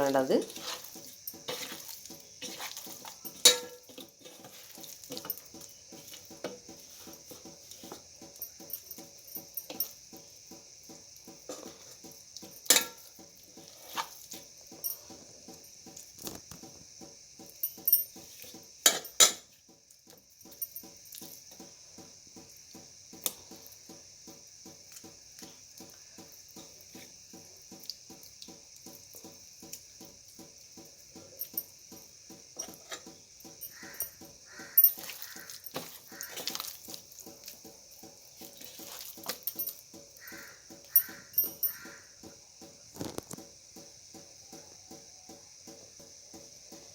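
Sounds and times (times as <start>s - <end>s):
metal utensils and dishes clinking: 0.0s - 10.0s, 11.5s - 15.2s, 17.6s - 19.5s, 32.6s - 37.5s.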